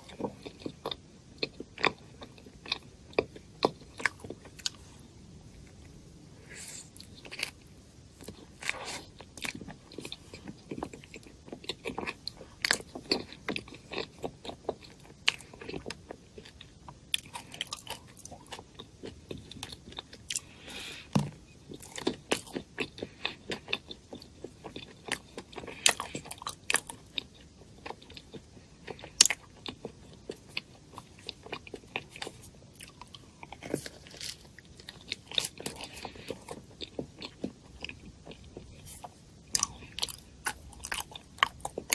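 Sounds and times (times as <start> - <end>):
person biting and chewing food: 0.0 - 41.9.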